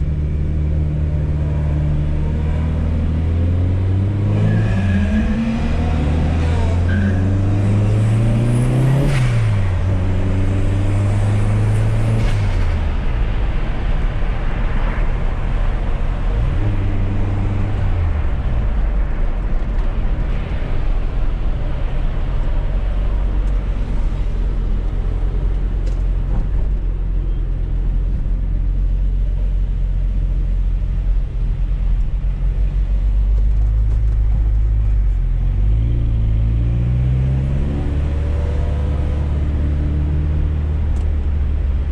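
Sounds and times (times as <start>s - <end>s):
car engine revving: 0.0s - 12.9s
road and tyre noise: 0.0s - 41.9s.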